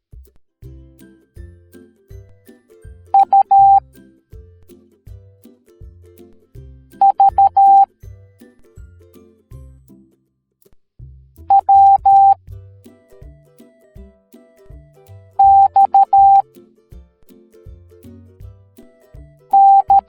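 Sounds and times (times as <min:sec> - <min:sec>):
background music with bass: 0:00.0 - 0:10.1, 0:11.0 - 0:20.0
morse code beeps: 0:03.2 - 0:03.8, 0:07.0 - 0:07.9, 0:11.5 - 0:12.4, 0:15.4 - 0:16.4, 0:19.6 - 0:20.0.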